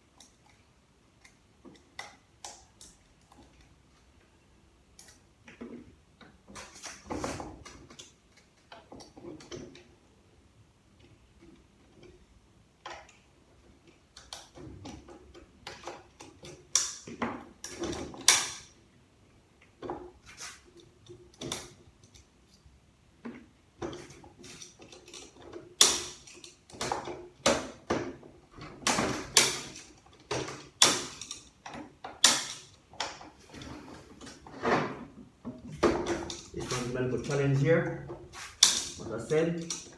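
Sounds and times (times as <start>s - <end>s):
metallic clanks and knocks: 34.2s - 37.4s.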